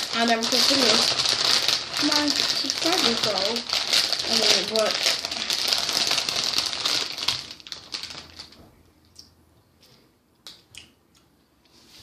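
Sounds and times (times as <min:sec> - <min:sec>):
crinkly rustling of handled items: 0:00.0 - 0:08.8.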